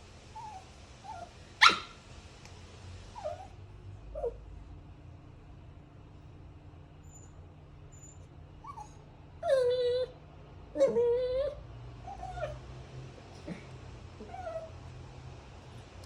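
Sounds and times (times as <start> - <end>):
dog whining: 0.4 - 2.0, 3.2 - 4.4, 7.0 - 12.6, 14.2 - 14.8.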